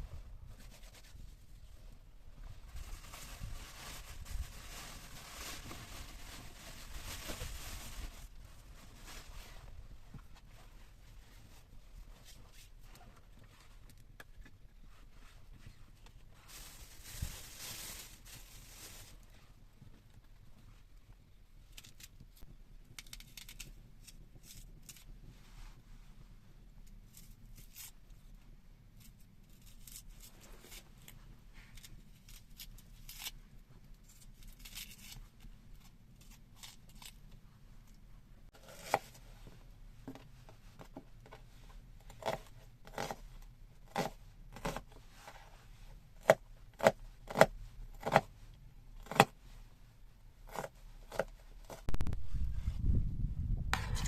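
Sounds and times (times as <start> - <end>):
soft rustling: 0.0 - 21.4, 24.4 - 42.0.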